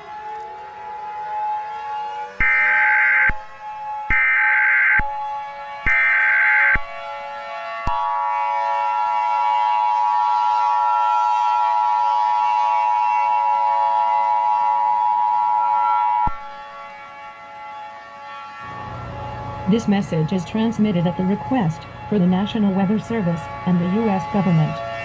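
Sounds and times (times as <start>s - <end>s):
faint steady hum of tones: 18.3s - 25.0s.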